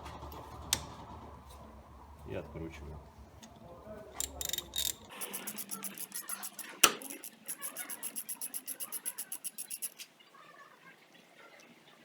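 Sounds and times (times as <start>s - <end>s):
ratchet wrench clicking: 4.2s - 10.0s.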